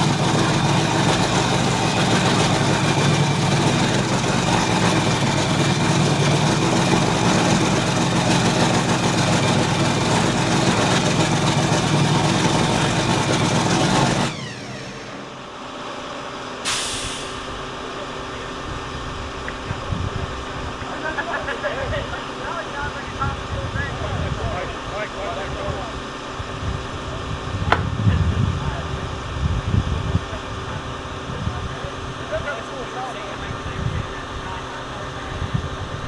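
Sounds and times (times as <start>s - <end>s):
powerboat engines running: 0.0s - 36.0s
short sudden hiss: 16.6s - 17.6s.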